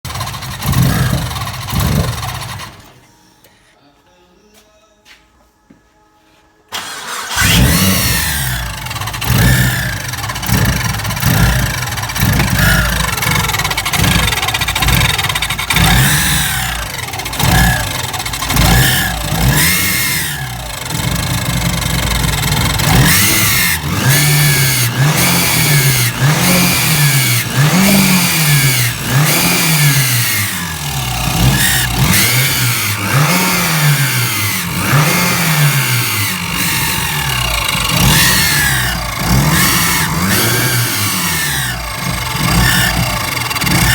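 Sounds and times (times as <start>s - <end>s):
car engine revving: 0.1s - 2.9s, 6.8s - 43.9s
engine screeching: 0.1s - 3.4s, 6.7s - 43.9s.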